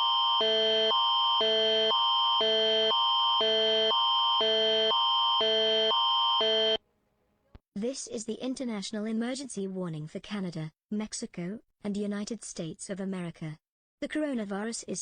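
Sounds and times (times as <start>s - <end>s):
alternating electronic alert tone: 0.0s - 6.8s.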